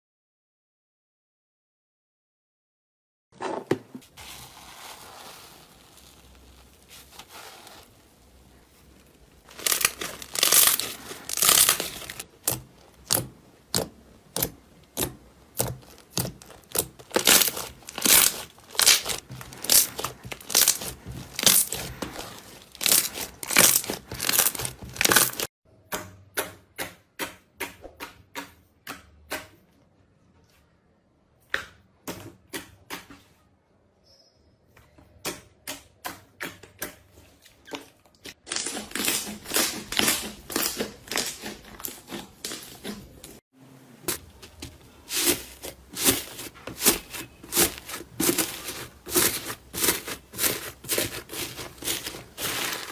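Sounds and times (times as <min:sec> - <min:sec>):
slime crackling and popping: 0:04.6 - 0:25.5, 0:38.4 - 0:42.8, 0:44.1 - 0:52.9.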